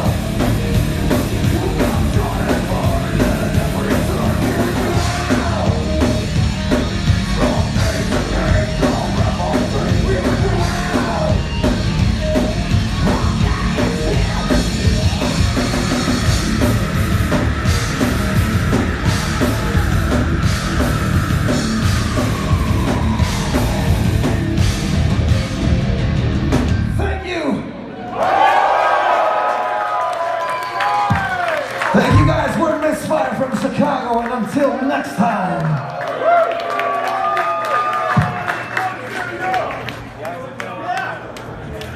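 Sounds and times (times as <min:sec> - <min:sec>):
pounding drums: 0:00.0 - 0:27.0, 0:32.0 - 0:32.7
bass guitar: 0:00.0 - 0:27.4, 0:32.0 - 0:33.9
distorted guitars: 0:00.0 - 0:27.4, 0:32.0 - 0:34.0
heavy rock band playing: 0:00.0 - 0:27.4, 0:31.9 - 0:33.9.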